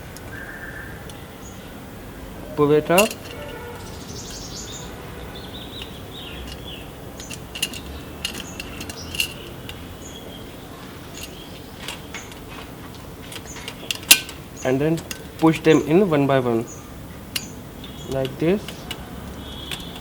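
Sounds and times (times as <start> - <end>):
light clicks and clinks: 2.9 - 4.9, 5.6 - 15.8, 17.3 - 20.0.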